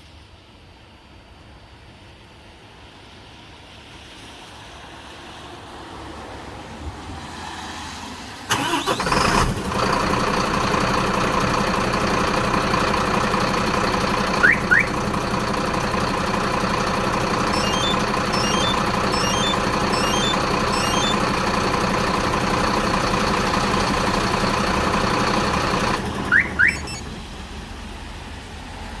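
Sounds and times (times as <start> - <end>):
truck diesel engine idling: 8.5 - 27.6
rising alarm chirps: 14.4 - 15.0, 17.5 - 21.4, 26.3 - 27.1.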